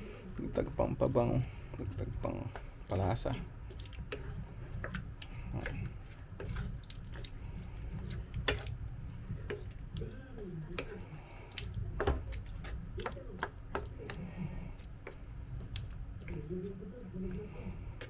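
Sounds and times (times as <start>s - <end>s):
stew bubbling in a pan: 0.0s - 18.0s.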